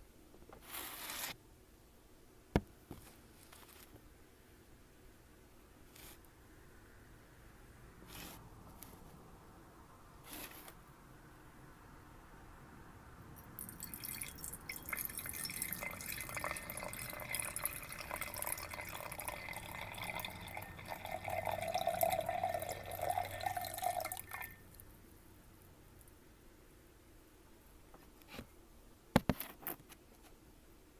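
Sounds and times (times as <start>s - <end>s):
water pouring into a glass: 13.4s - 24.8s.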